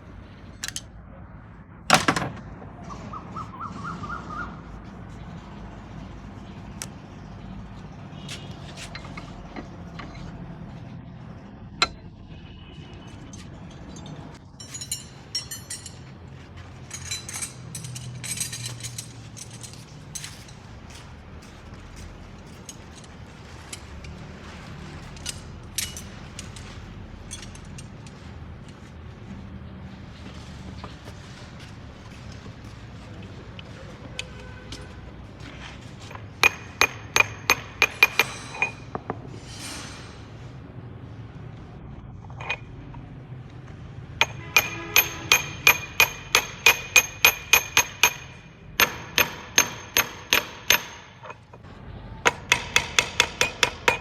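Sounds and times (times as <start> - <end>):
metal tools clinking: 0.6 - 0.9, 13.2 - 20.8, 22.4 - 28.9, 36.1 - 40.2, 42.3 - 42.9, 44.2 - 51.6.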